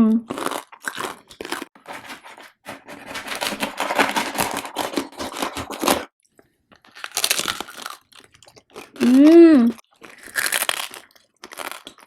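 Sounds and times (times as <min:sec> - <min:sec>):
crunching and chewing crisp food: 0:00.2 - 0:12.0.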